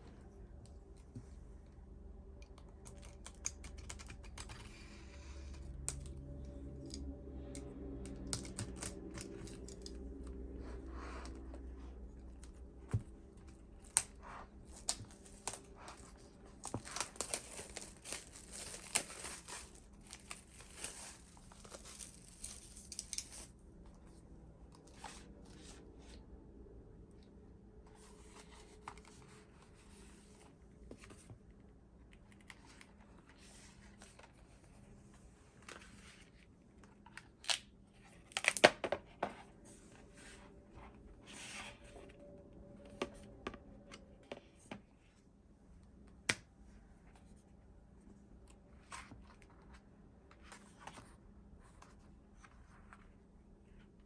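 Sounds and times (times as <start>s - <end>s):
packaging rustling and tearing: 13.8s - 23.5s.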